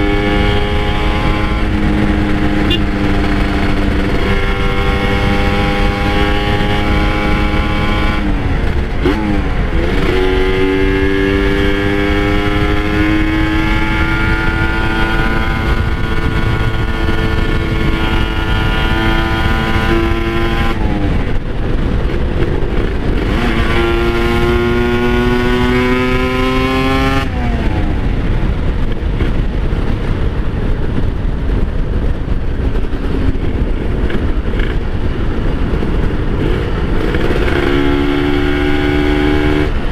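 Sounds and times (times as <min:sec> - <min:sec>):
wind rush: 0:00.0 - 0:39.9.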